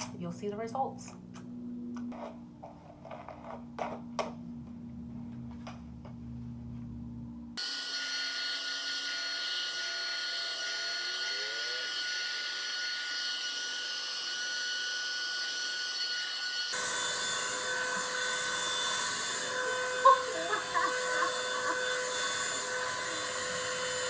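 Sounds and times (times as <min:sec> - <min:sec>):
hair dryer brush whirring: 0:16.7 - 0:24.0.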